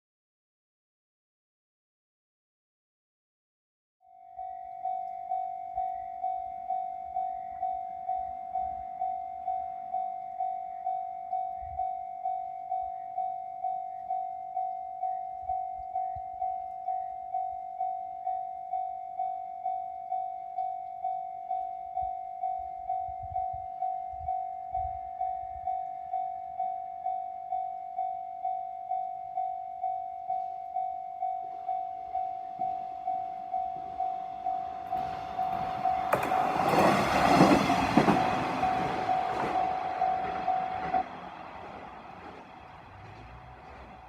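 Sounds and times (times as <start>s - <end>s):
railroad crossing bell ringing: 4.1s - 44.0s
train rumble: 32.9s - 44.0s.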